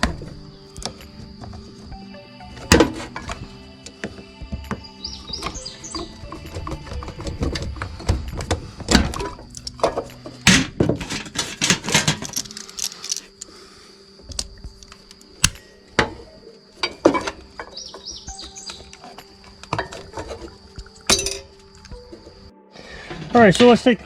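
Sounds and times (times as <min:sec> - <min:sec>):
hand tools and metal parts clinking: 0:02.6 - 0:13.5, 0:14.3 - 0:22.4.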